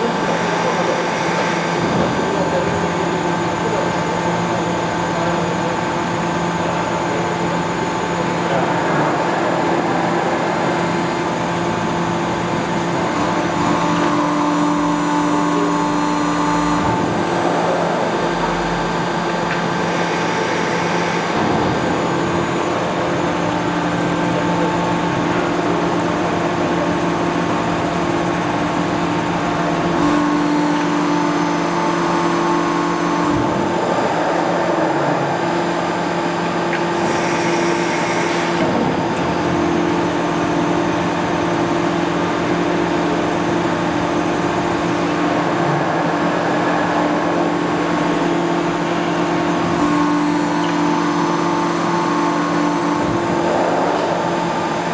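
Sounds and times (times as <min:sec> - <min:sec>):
hydraulic press hum: 0:00.0 - 0:54.9.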